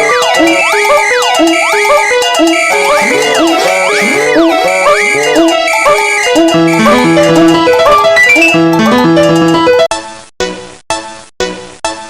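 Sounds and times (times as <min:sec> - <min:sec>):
instrumental background music: 0:00.0 - 0:09.9.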